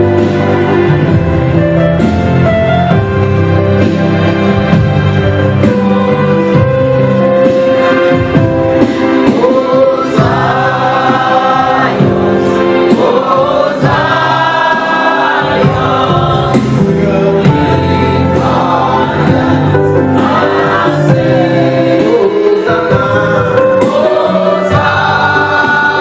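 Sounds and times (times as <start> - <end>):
instrumental backing with beat: 0.0 - 26.0
choir singing gospel: 8.8 - 26.0.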